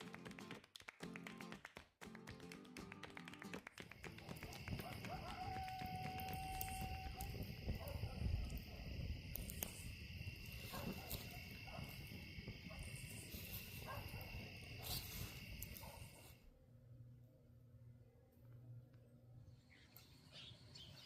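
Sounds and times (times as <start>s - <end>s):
insects trilling: 4.0s - 16.4s.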